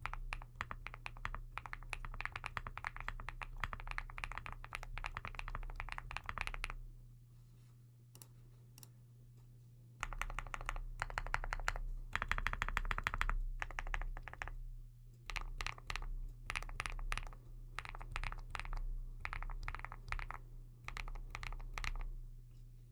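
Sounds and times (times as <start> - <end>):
mechanical keyboard typing: 0.0 - 6.8, 10.0 - 14.6, 15.3 - 22.1.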